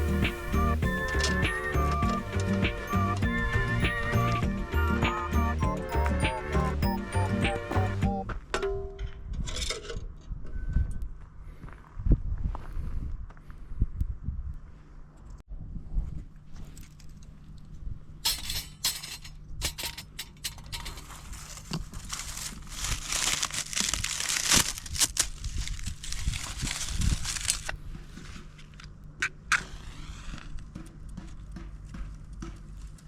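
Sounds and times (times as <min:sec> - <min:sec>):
crinkling and rustling: 0:16.2 - 0:29.0.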